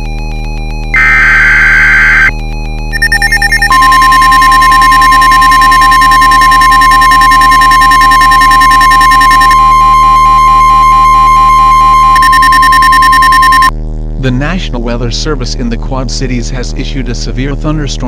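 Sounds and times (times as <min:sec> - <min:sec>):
steady alert tone: 0:01.0 - 0:02.3, 0:03.0 - 0:13.7
synthesizer music: 0:02.9 - 0:13.7.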